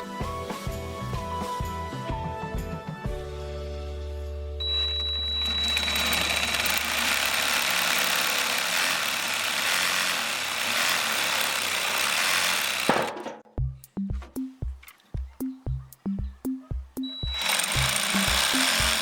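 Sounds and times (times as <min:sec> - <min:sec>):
reciprocating saw cutting wood: 0:05.7 - 0:13.3, 0:17.2 - 0:19.0.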